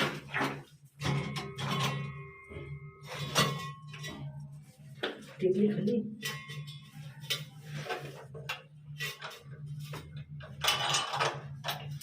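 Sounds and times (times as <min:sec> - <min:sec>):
metal tools clinking and knocking: 0:06.2 - 0:12.0.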